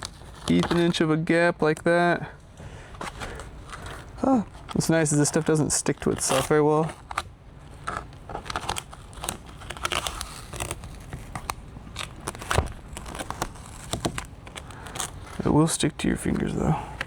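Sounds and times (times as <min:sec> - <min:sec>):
vinyl film crinkling and peeling: 0:00.0 - 0:02.1, 0:02.8 - 0:17.0.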